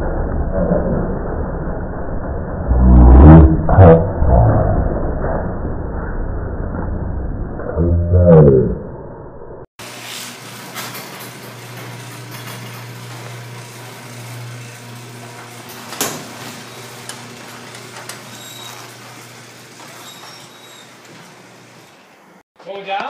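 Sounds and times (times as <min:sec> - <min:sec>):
garage door opener motor hum: 0:09.8 - 0:22.4.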